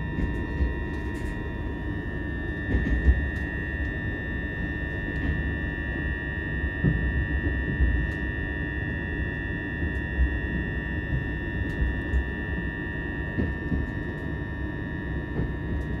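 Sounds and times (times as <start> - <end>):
train running rumble: 0.0 - 4.0, 9.8 - 14.3, 15.3 - 16.0.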